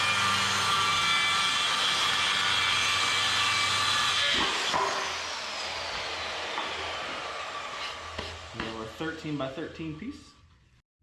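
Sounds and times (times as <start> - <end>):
saw blade spinning down: 0.0 - 8.6
power saw cutting wood: 0.0 - 10.0.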